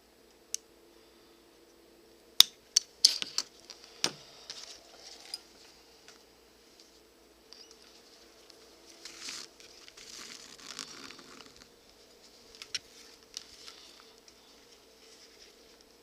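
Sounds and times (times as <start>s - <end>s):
scratchy leather rustling: 7.8s - 13.8s.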